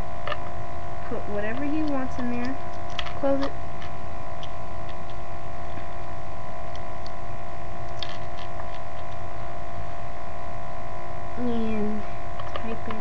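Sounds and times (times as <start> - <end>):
electrical hum: 0.0 - 13.0.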